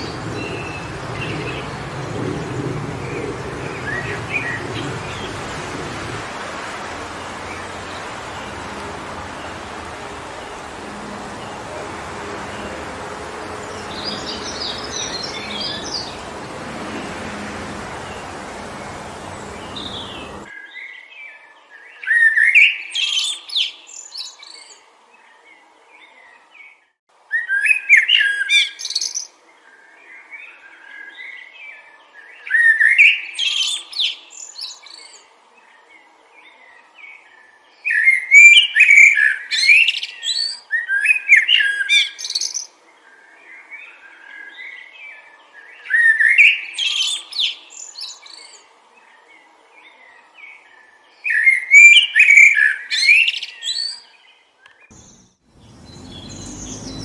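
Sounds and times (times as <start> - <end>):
songbird warbling: 0.0 - 20.5, 54.9 - 57.0
wind noise: 0.0 - 20.5
soft bird chirps: 54.6 - 57.0.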